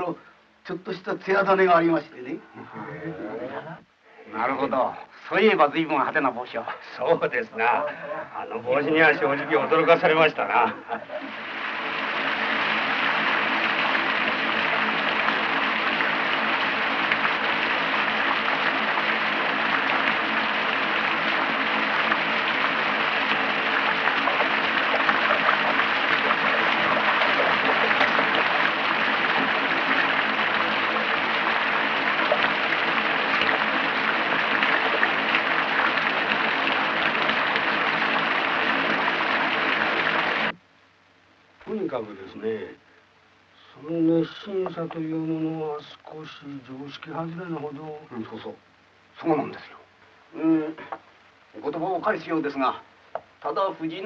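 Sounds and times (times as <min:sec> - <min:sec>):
heavy rain falling: 0:08.8 - 0:40.6.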